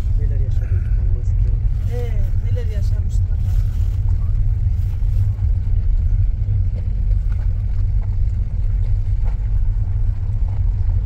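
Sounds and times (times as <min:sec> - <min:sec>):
car engine and road rumble: 0:00.0 - 0:11.0.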